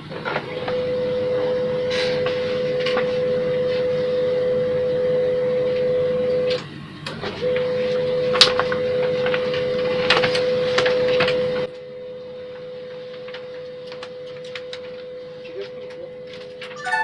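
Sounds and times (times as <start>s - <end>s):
laser printer humming: 0.2s - 11.7s.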